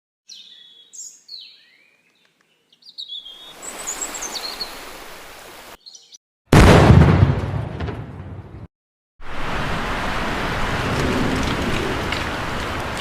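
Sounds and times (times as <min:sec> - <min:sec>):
bird-like chirps: 0:00.3 - 0:04.9, 0:05.8 - 0:06.2
loud boom: 0:06.5 - 0:08.7.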